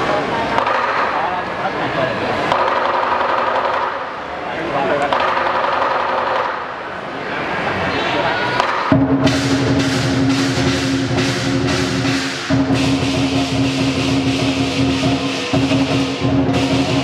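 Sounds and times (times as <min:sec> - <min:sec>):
drum beats: 0:08.6 - 0:17.0
cymbal clashes: 0:08.8 - 0:17.0.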